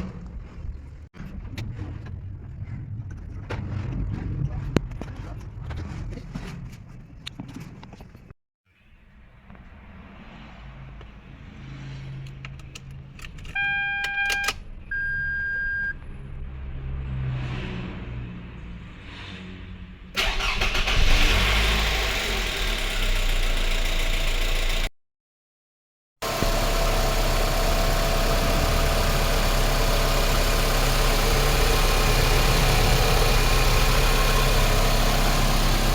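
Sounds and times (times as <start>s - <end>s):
car engine idling: 26.2s - 35.9s.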